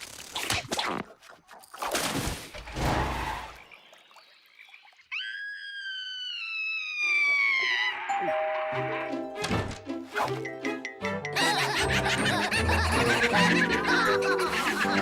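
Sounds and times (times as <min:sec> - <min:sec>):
music: 0:08.1 - 0:15.0.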